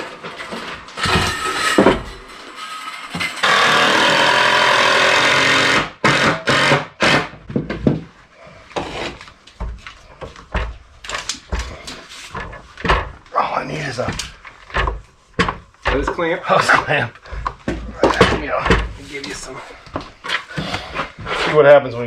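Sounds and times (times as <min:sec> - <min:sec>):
power saw running: 0:03.3 - 0:05.9
wood knocking and clunking: 0:07.4 - 0:08.2, 0:08.8 - 0:21.4.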